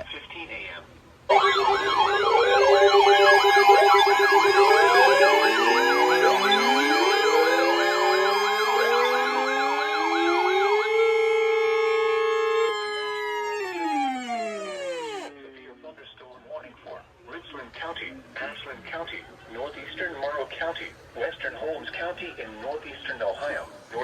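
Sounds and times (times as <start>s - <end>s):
steady alert tones: 1.3s - 15.3s
rising siren glides: 1.3s - 15.4s
warbling alarm sirens: 1.3s - 15.4s.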